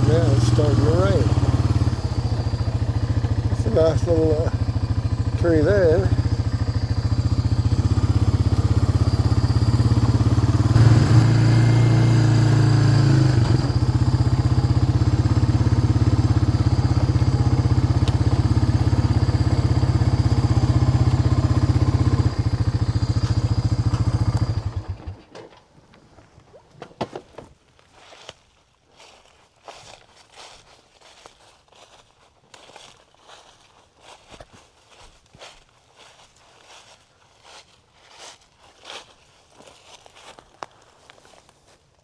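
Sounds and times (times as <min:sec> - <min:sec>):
vehicle engine idling: 0:00.0 - 0:25.3.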